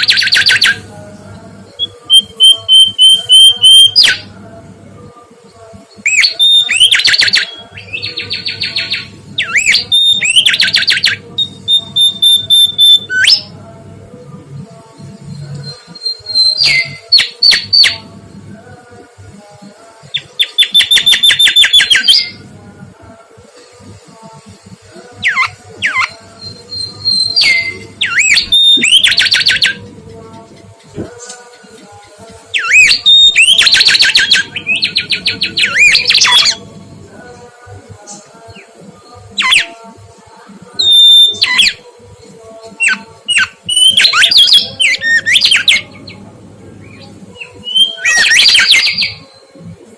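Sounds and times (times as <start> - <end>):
bird singing whistled phrases: 8.7 - 13.4, 25.2 - 29.8, 32.6 - 36.6, 40.8 - 41.8, 47.4 - 49.2.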